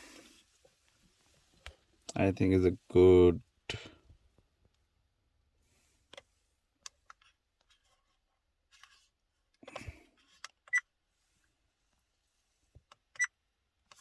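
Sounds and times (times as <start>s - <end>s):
small plastic clicks and handling: 6.1s - 10.8s, 12.8s - 14.0s.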